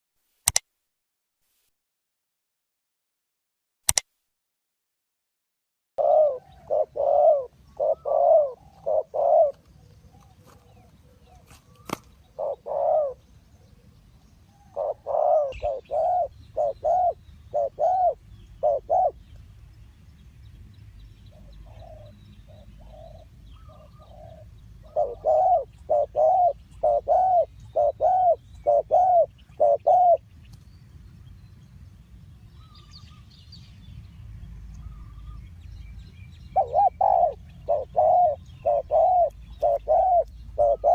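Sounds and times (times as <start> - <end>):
dove cooing: 6.0 - 19.2, 21.3 - 30.2, 36.5 - 40.9.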